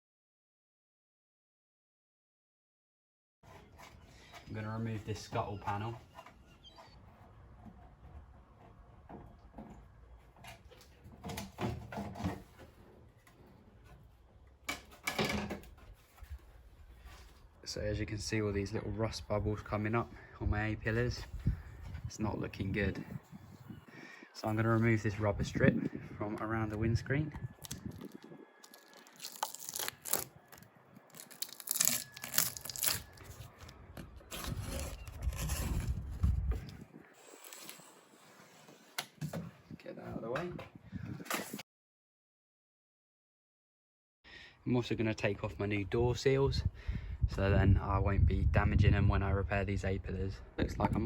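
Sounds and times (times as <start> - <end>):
rubber trim strip peeling: 27.6 - 33.3.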